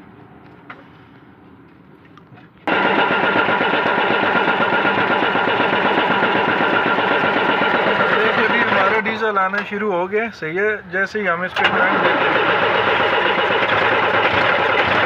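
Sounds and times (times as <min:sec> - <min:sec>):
diesel truck engine starting: 0:02.7 - 0:09.7, 0:11.4 - 0:15.0.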